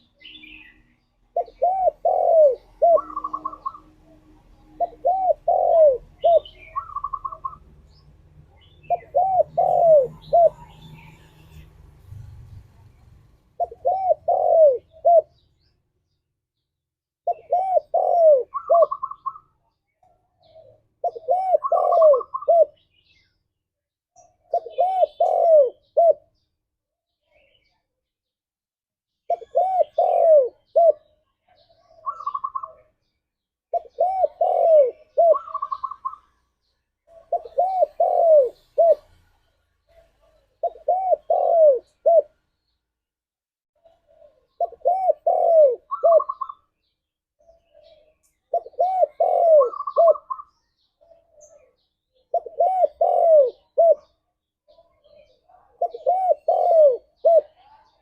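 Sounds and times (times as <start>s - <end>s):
dove cooing: 0.0s - 8.0s, 8.6s - 11.6s, 13.6s - 15.4s, 17.2s - 19.5s, 20.2s - 22.9s, 24.4s - 26.4s, 29.3s - 32.9s, 33.7s - 36.4s, 37.1s - 42.4s, 43.8s - 46.7s, 47.4s - 58.0s.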